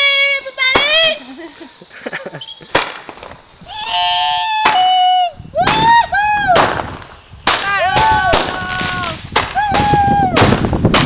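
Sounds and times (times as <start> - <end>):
fireworks banging: 0.0 - 11.0
rising and falling whistling tones: 2.2 - 6.1.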